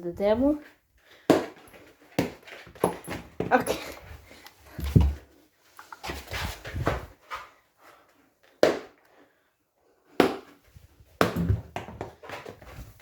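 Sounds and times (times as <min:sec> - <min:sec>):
scuffles and knocks: 0:01.4 - 0:07.5.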